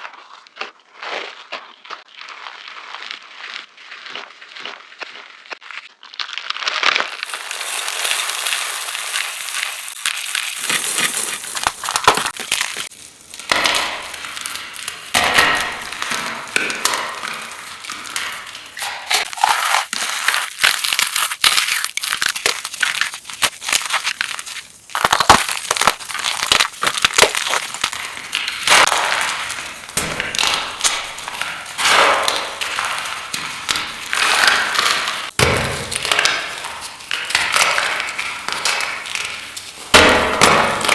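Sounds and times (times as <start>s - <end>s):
chalk being crushed: 0.0s - 40.9s.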